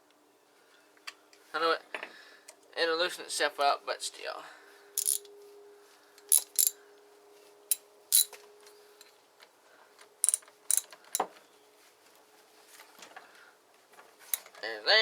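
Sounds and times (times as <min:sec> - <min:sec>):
hand tools clicking on metal: 0:05.0 - 0:05.3, 0:06.2 - 0:06.8, 0:07.7 - 0:08.3, 0:10.2 - 0:11.2, 0:14.3 - 0:14.6.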